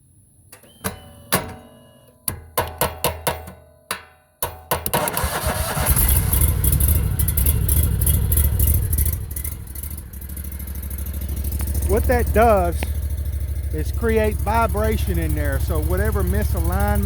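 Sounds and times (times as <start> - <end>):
engine cranking and running: 4.8 - 17.0
low hum: 6.0 - 17.0
sharp taps on starter: 7.4 - 17.0.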